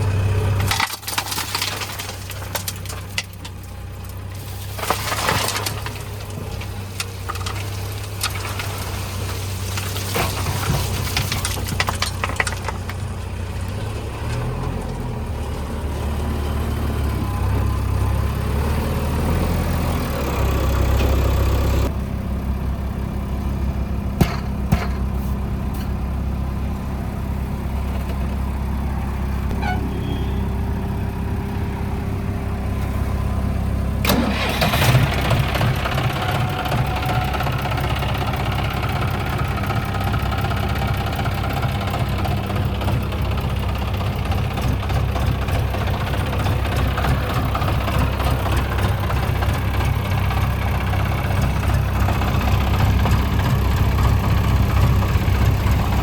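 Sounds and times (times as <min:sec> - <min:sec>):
heavy diesel machinery running: 0:00.0 - 0:56.0
metal clanking and knocks: 0:04.7 - 0:13.3, 0:24.2 - 0:25.2, 0:41.9 - 0:56.0.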